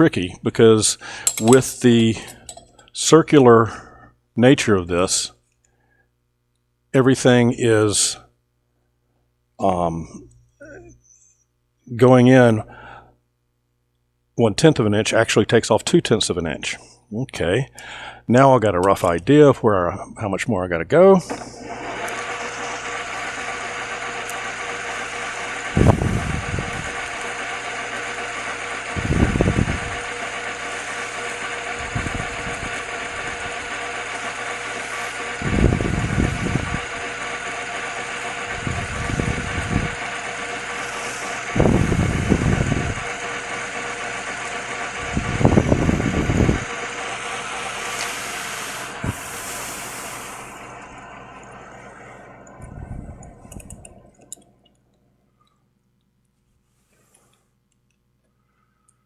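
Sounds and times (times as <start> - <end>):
metal lathe humming: 0.0 - 2.9, 21.0 - 54.8
boring tool cutting metal: 1.1 - 2.8, 21.3 - 52.6.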